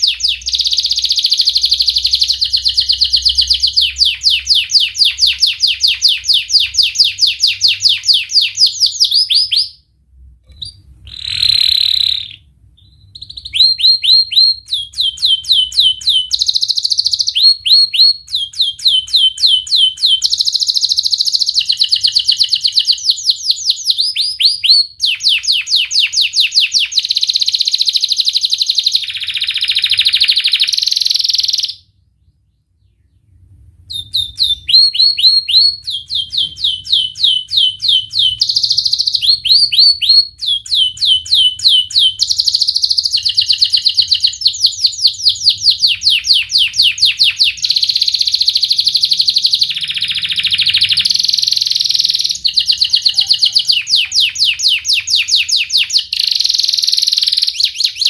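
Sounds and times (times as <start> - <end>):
canary singing trills: 0.0 - 9.8, 10.5 - 58.0.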